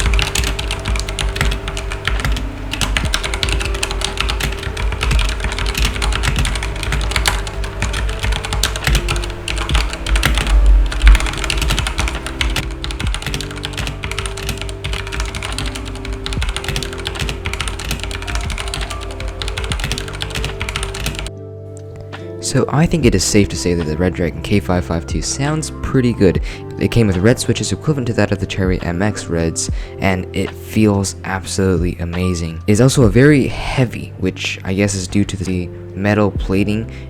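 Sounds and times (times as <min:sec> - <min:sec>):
mechanical keyboard typing: 0:00.0 - 0:21.3.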